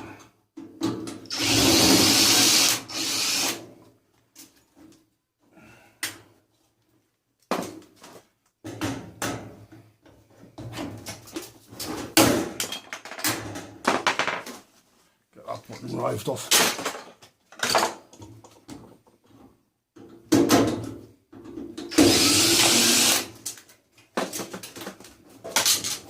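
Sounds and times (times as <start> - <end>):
power drill driving screws: 1.3 - 3.6, 21.9 - 23.4.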